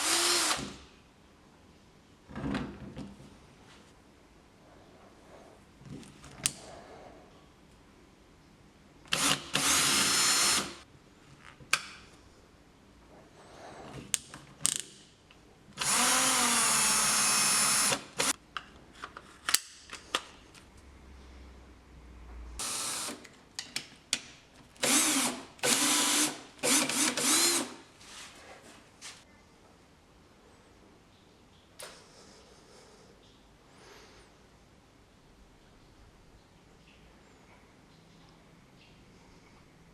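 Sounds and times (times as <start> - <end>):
cordless drill whirring: 0.0 - 0.8, 9.1 - 10.8, 15.8 - 18.4, 22.6 - 23.2, 24.8 - 27.8.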